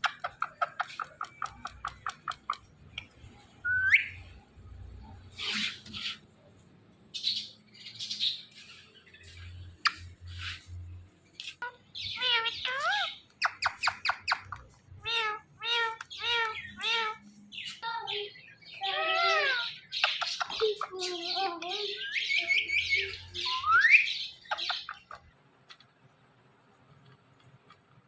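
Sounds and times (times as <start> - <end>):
parrot squawking and calling: 0.0 - 2.7, 5.3 - 6.3, 11.6 - 25.2.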